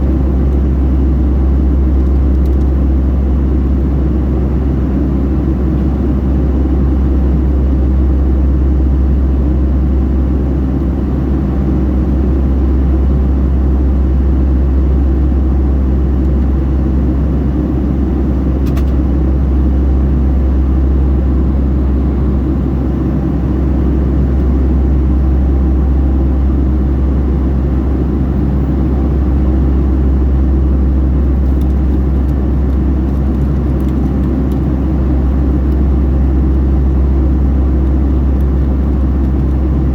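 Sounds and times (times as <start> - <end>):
airplane cabin engine drone: 0.0 - 39.9
click: 2.0 - 2.7.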